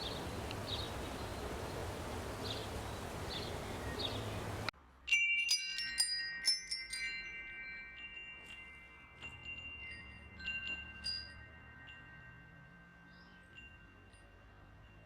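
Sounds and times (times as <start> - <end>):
wind chimes ringing: 5.1 - 15.0.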